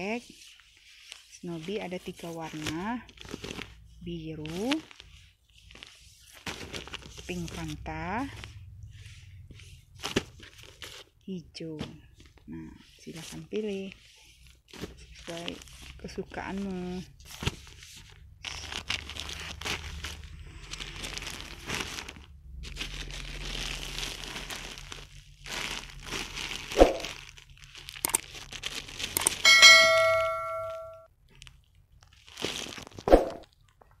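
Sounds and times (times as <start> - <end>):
plastic packaging crinkling: 0.0 - 34.0
bell-like ding: 29.4 - 31.0.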